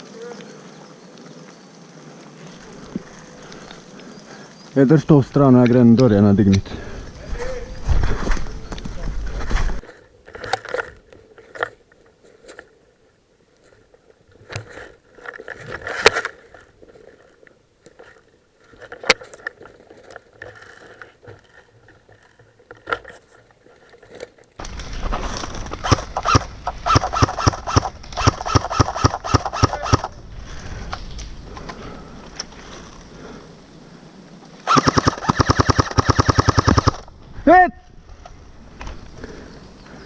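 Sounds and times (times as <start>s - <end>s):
footsteps on rough ground: 0.4s - 33.4s
person running: 7.8s - 24.6s.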